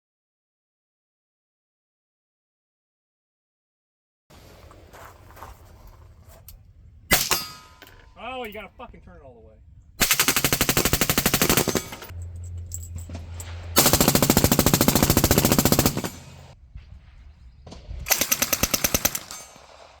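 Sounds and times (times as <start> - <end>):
automatic gunfire bursts: 10.0 - 12.1, 13.8 - 16.5, 18.1 - 19.8.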